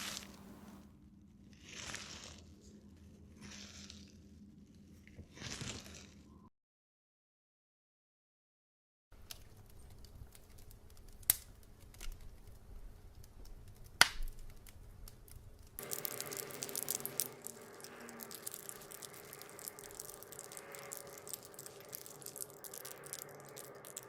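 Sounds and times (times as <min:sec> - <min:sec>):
dense patter of small clicks: 0:09.2 - 0:24.0
steady hum: 0:15.8 - 0:24.0.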